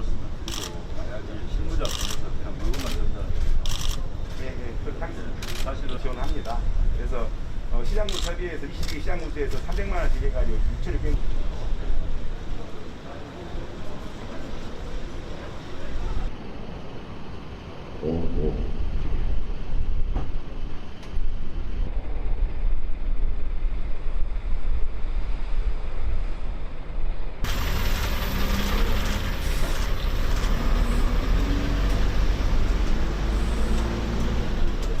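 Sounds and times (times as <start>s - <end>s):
heavy vehicle engine rumbling: 27.4s - 35.0s.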